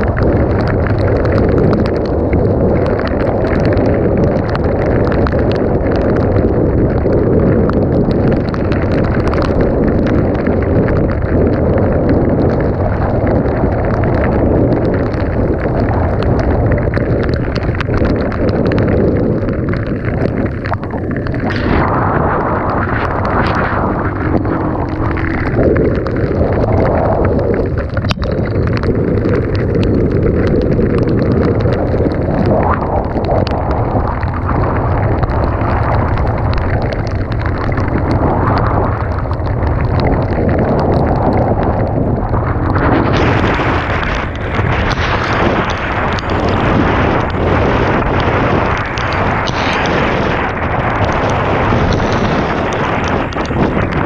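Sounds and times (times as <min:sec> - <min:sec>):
wind buffeting microphone: 0:00.0 - 0:54.0
dirt bike engine running: 0:20.1 - 0:31.8.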